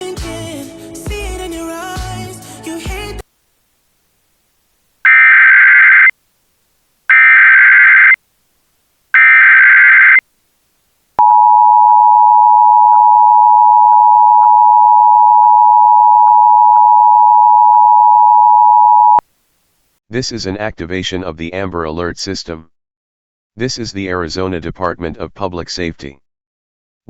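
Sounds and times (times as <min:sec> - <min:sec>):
screechy digital data tones: 0:05.1 - 0:06.1, 0:07.1 - 0:08.2, 0:09.2 - 0:10.2
two-tone attention signal: 0:11.2 - 0:19.2.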